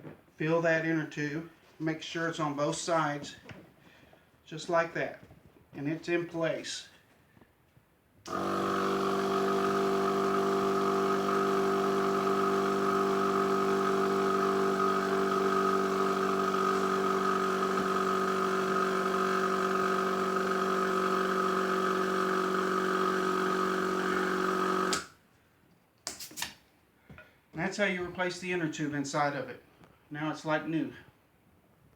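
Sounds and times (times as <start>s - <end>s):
air compressor humming: 8.3s - 25.1s.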